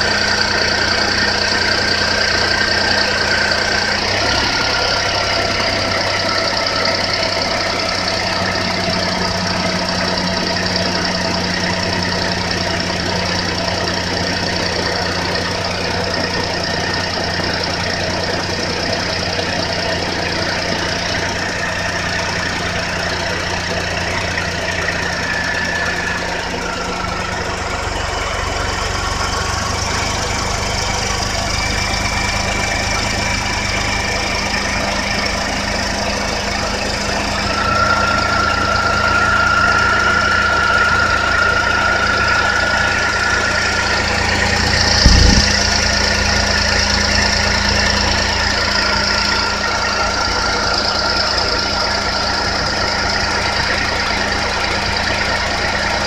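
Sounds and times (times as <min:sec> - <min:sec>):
car engine idling: 0:00.0 - 0:56.0
high-pitched alternator whine: 0:00.0 - 0:56.0
thump: 0:44.9 - 0:45.7.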